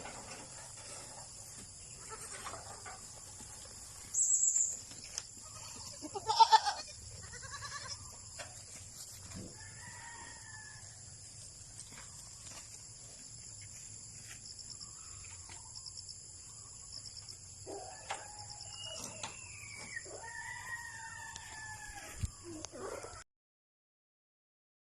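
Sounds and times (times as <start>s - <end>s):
goat bleating: 2.0s - 2.7s, 5.4s - 8.2s
rooster crowing: 9.5s - 11.0s, 17.7s - 19.3s, 19.9s - 22.3s.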